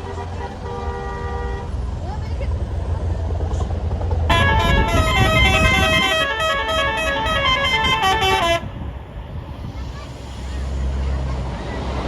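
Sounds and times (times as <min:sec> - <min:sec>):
bus horn playing melody: 0:00.0 - 0:01.7, 0:04.3 - 0:08.9
bus engine rumble: 0:00.0 - 0:12.0.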